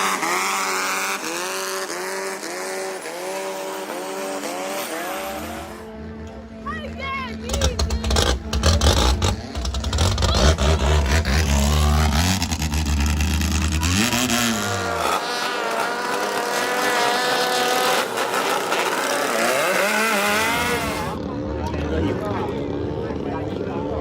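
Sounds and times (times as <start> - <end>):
boat engine running hard: 7.3 - 24.0.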